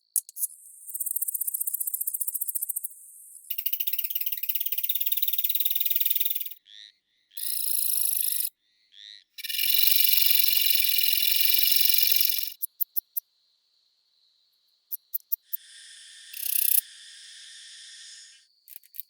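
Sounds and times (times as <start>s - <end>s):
katydid steady high buzzing song: 9.4s - 12.6s, 15.5s - 18.6s
katydid short chirps: 15.1s - 19.0s
katydid fast high trill: 15.6s - 18.4s.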